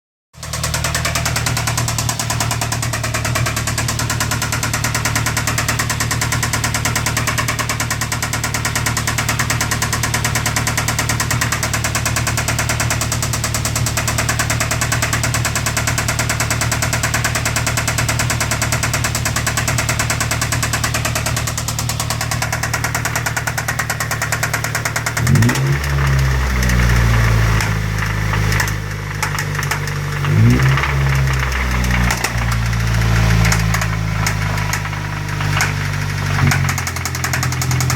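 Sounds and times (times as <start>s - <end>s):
car engine idling with rod knock: 0.4s - 37.9s
engine revving: 22.2s - 37.9s.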